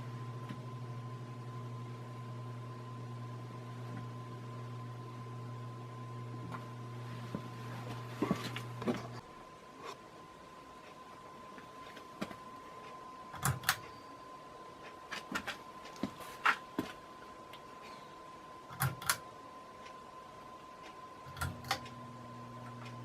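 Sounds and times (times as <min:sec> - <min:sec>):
sharp clicks: 0:18.7 - 0:19.2.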